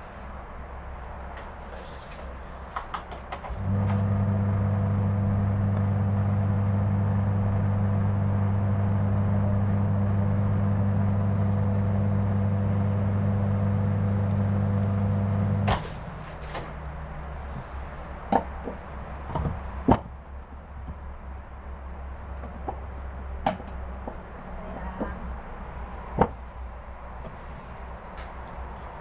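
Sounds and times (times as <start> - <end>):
washing machine humming: 3.3 - 16.5.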